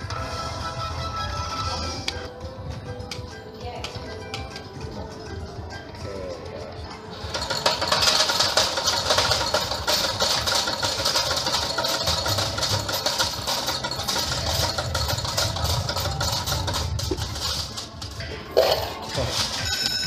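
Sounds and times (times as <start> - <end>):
slot machine rapid clattering clicks: 7.1 - 18.2.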